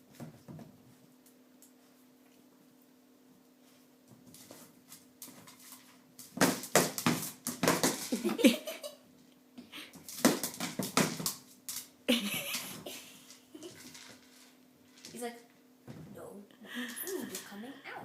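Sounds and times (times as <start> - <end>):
faint steady hum: 0.0 - 18.0
kibble rattling in toy on floor: 13.3 - 15.4.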